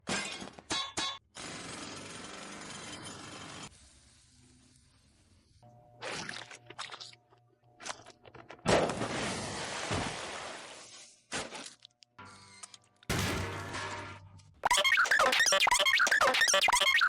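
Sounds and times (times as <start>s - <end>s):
loud sudden crash: 13.1s - 14.1s.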